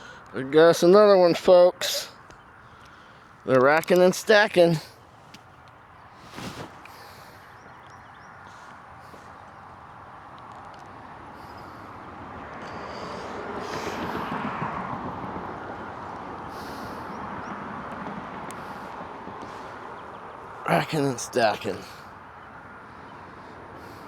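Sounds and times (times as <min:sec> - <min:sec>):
vehicle passing by: 0:11.0 - 0:24.0.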